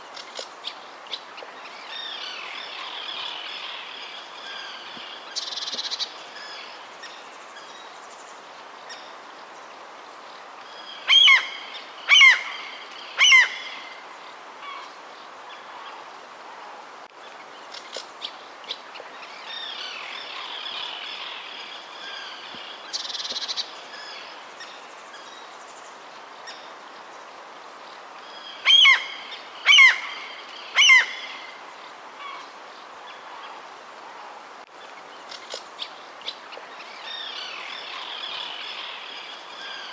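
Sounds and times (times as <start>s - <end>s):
wild birds calling: 10.8s - 14.0s, 28.3s - 33.6s.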